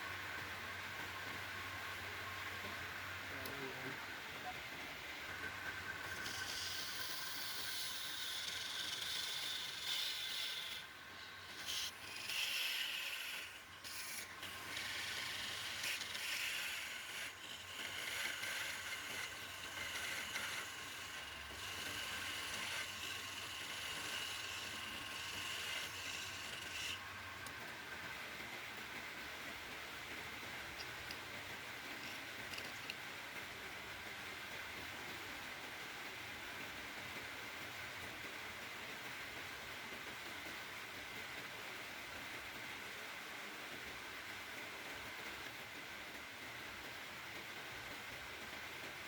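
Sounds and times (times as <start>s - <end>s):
faint steady whine: 0.0s - 49.0s
wood lathe scraping wood: 5.3s - 28.5s, 32.0s - 33.0s.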